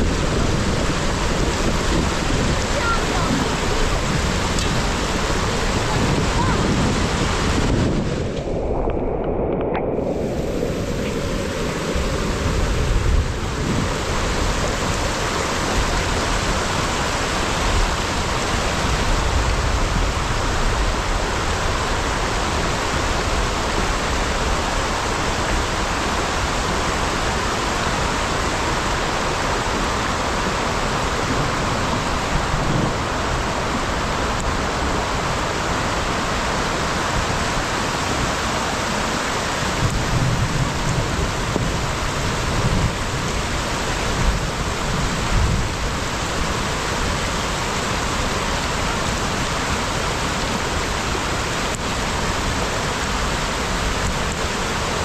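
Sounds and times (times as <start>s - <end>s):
heavy rain falling: 0.0s - 55.0s
low rumble: 3.4s - 14.6s.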